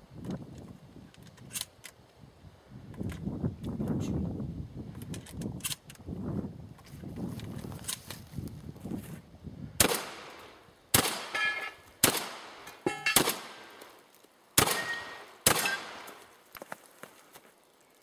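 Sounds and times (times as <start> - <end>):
shotgun shots: 9.8 - 13.8, 14.6 - 16.2.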